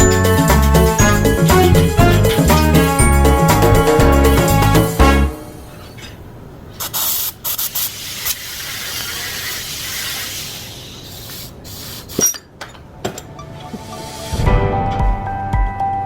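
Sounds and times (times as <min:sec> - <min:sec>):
hissing spray: 0:06.7 - 0:12.3.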